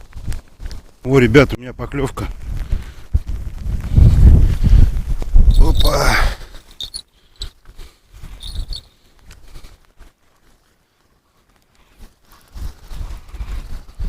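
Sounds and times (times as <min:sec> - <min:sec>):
wind buffeting microphone: 0:02.1 - 0:06.5, 0:12.4 - 0:14.0.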